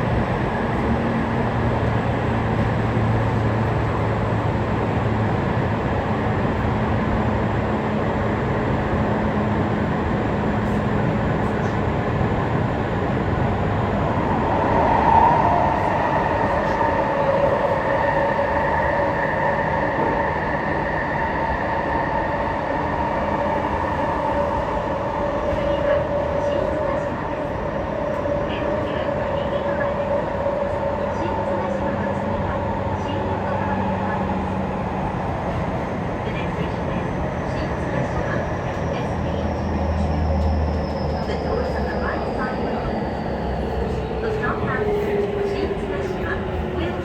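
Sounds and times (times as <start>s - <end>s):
train wheels rumbling on rail: 22.9s - 47.0s.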